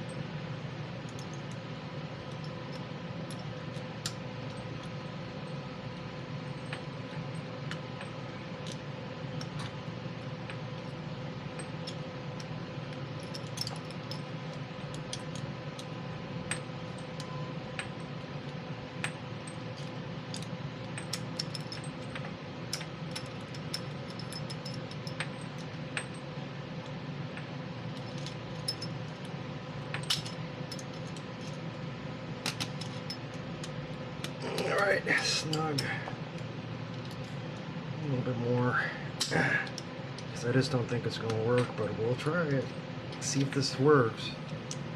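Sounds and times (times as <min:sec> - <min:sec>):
steady hum with held tones: 0:00.0 - 0:44.9
metallic tool clicks and clinks: 0:13.2 - 0:14.3, 0:19.0 - 0:26.2, 0:29.9 - 0:31.6.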